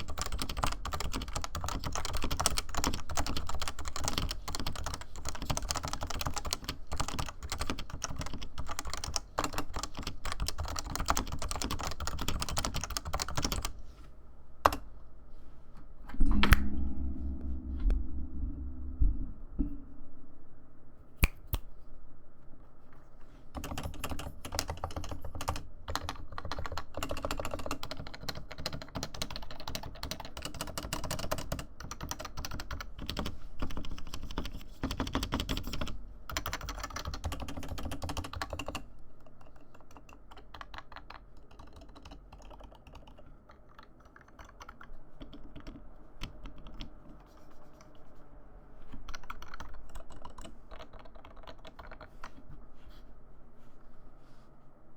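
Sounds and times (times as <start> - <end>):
fast typing on keyboard: 0.0 - 13.8, 23.6 - 48.1, 49.0 - 52.3.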